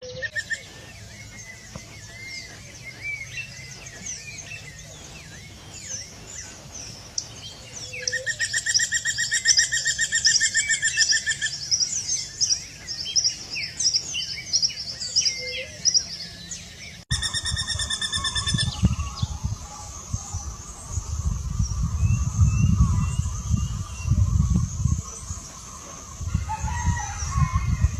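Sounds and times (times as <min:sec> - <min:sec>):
woodpecker calling: 0:00.0 - 0:16.4, 0:17.1 - 0:21.6
birds chirping: 0:00.0 - 0:27.9.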